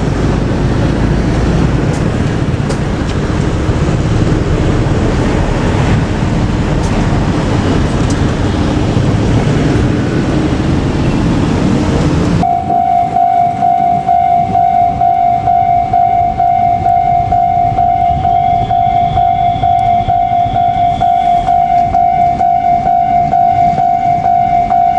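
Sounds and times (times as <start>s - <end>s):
electric train rumbling past: 0.0s - 24.9s
level crossing alarm bell: 12.4s - 24.9s.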